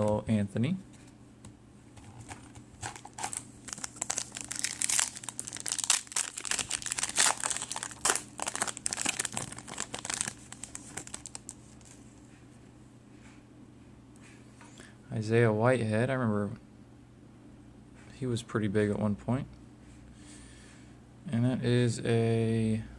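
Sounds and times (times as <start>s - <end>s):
foil wrapper crinkling and tearing: 2.8s - 12.0s.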